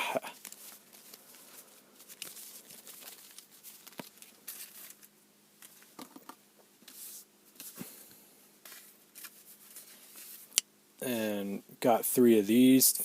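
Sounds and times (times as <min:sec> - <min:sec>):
cards and packaging rustling: 0:00.0 - 0:08.0, 0:08.6 - 0:10.6.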